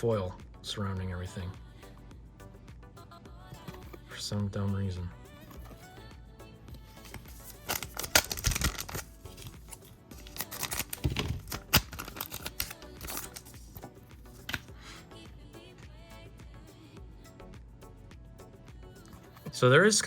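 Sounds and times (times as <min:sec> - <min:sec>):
quiet background music: 0:00.0 - 0:20.0
cards rustling: 0:06.8 - 0:14.7.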